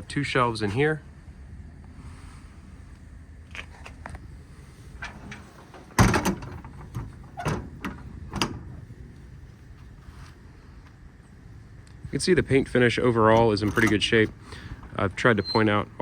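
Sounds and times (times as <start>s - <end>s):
metal door slamming: 5.0s - 8.8s, 13.4s - 14.2s
latch clicks: 13.3s - 14.4s.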